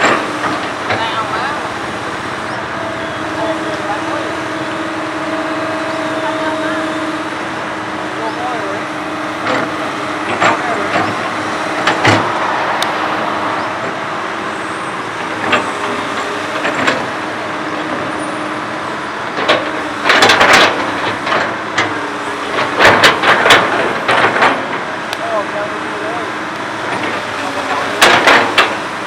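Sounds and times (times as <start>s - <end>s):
excavator diesel engine hum: 0.0s - 29.0s
sharp metal clanks and knocks: 27.0s - 28.8s.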